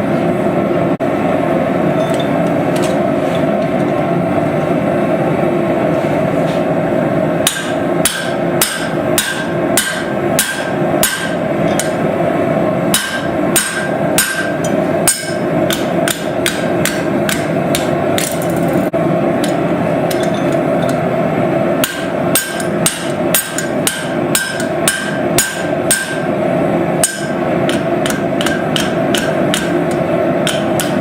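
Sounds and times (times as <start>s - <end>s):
hammer striking steel on anvil: 7.4s - 12.0s, 12.9s - 18.5s, 19.4s - 21.0s, 21.8s - 26.4s, 27.0s - 31.0s.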